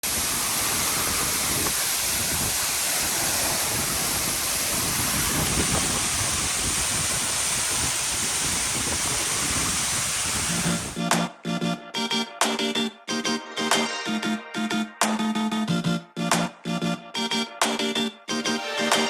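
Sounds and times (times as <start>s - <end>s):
waterfall roaring: 0.0s - 11.0s.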